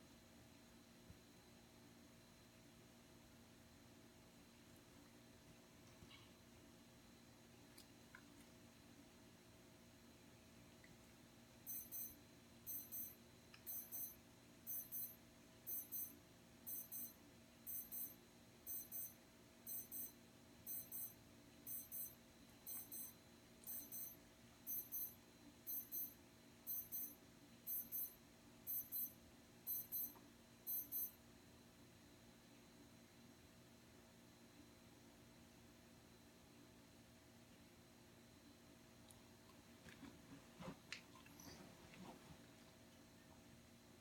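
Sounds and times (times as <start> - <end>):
electronic alarm double beeps: 11.7 - 31.2.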